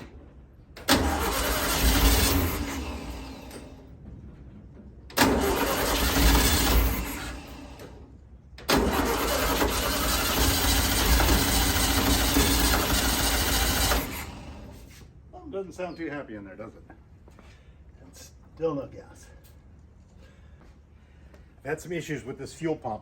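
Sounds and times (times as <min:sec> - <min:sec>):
car starter cranking: 0:00.8 - 0:03.8, 0:05.1 - 0:08.0, 0:08.6 - 0:14.7.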